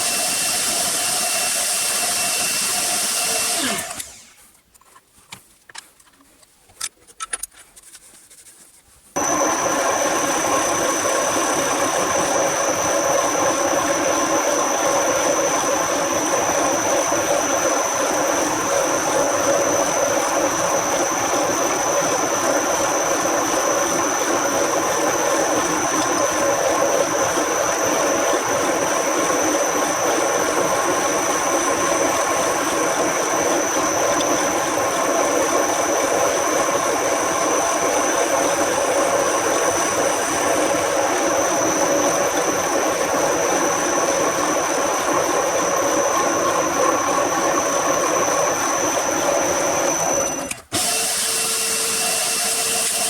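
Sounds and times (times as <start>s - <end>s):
machine tool high whine: 0.0s - 4.4s, 28.9s - 53.0s.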